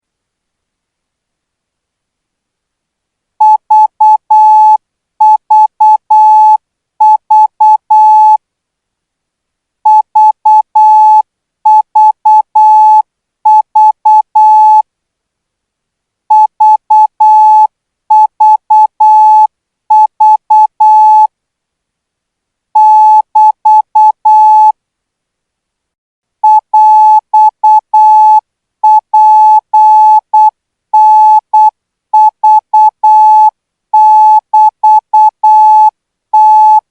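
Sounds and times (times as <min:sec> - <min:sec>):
morse code beeps: 0:03.4 - 0:08.4, 0:09.9 - 0:14.8, 0:16.3 - 0:21.3, 0:22.8 - 0:24.7, 0:26.4 - 0:36.8.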